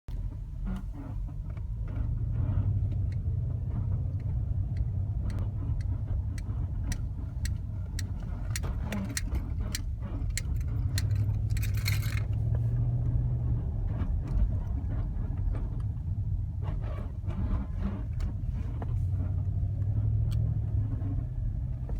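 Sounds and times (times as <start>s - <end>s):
vehicle creaks and clicks: 0.1s - 21.9s
vehicle low rumble: 0.1s - 21.9s.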